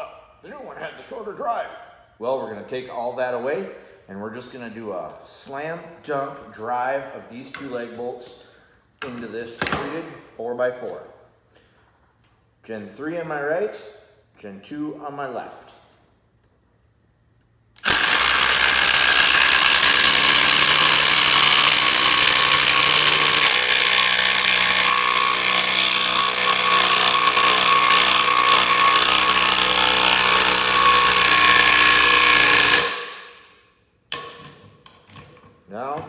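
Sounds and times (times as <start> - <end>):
impact drivers driving bolts into wood: 17.8 - 33.5.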